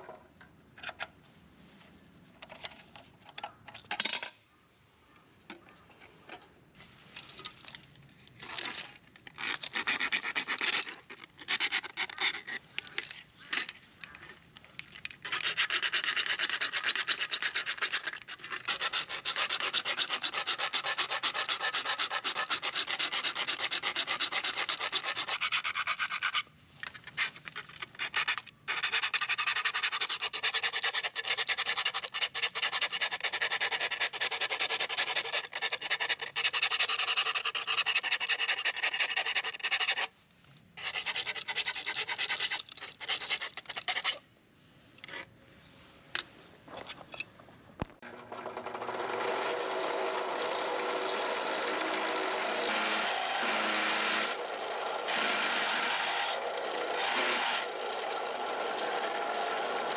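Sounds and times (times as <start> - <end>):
hand filing or sanding strokes: 15.2 - 26.5, 27.1 - 40.2, 40.8 - 44.2.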